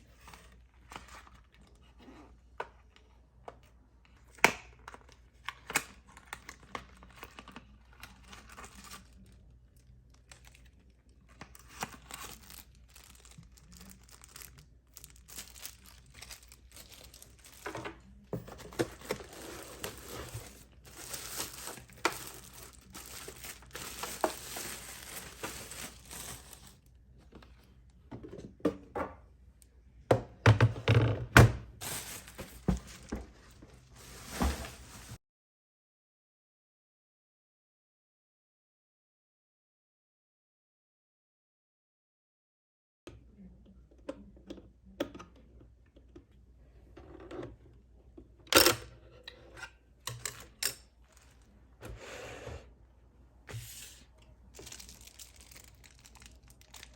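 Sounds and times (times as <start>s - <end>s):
packaging crinkling and tearing: 5.0s - 26.9s, 31.8s - 35.2s, 54.5s - 56.9s.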